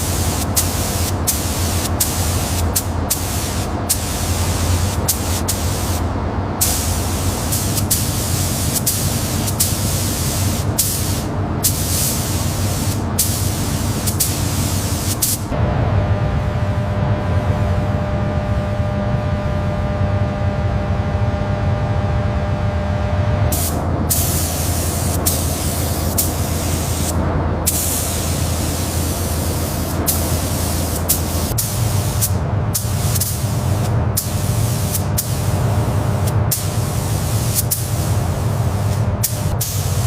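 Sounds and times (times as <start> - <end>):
compressed air hissing in bursts: 0.0 - 15.5, 23.5 - 40.0
low hum with steady tones: 0.0 - 40.0.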